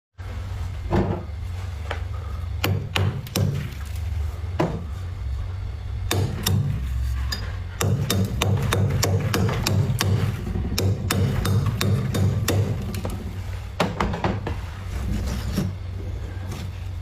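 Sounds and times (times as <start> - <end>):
low hum: 0.2 - 13.8.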